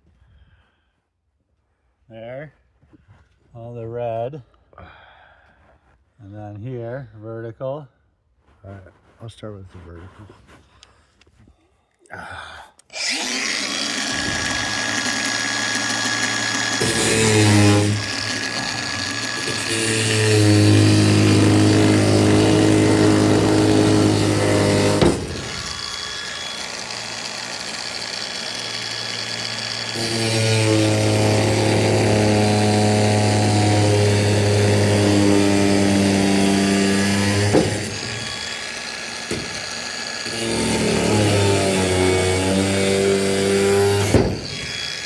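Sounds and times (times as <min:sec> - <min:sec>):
power tool cutting wire: 0:12.8 - 0:45.0.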